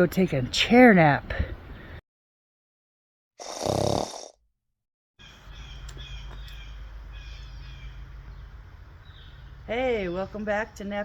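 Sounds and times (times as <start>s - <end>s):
small birds chirping: 5.2s - 11.0s.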